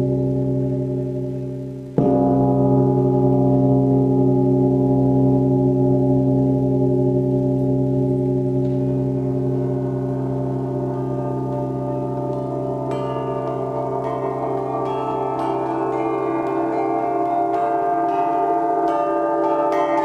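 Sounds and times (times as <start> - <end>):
higher bell tone: 2.0 - 20.0
flat metal bells ringing: 8.0 - 20.0.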